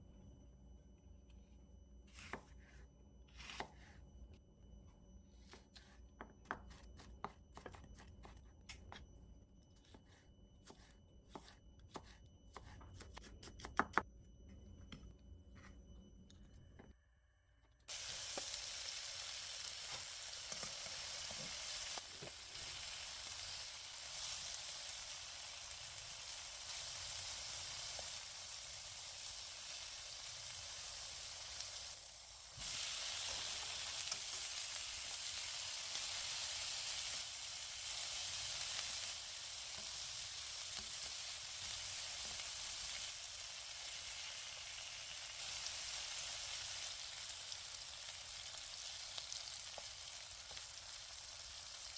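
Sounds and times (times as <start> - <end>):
food sizzling in a frying pan: 17.9 - 51.9.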